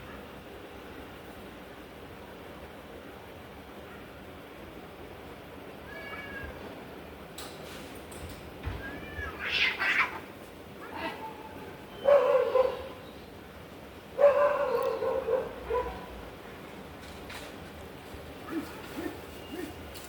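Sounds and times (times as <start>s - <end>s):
cat crying out: 5.8s - 6.6s, 8.8s - 12.8s.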